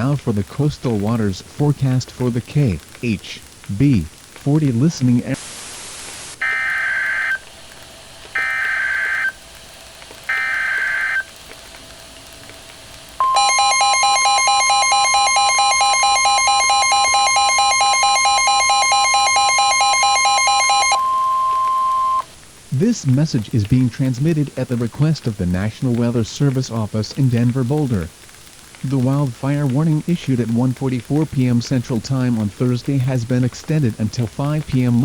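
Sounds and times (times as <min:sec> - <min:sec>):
steady high alert tone: 0:13.2 - 0:22.3
warbling digital data tones: 0:13.2 - 0:22.3.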